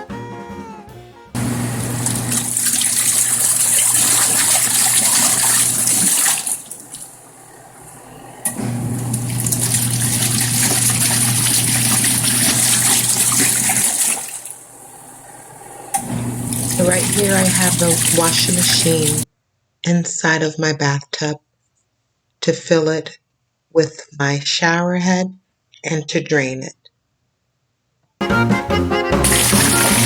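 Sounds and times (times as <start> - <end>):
washing machine motor humming: 1.4 - 19.3, 29.1 - 30.0.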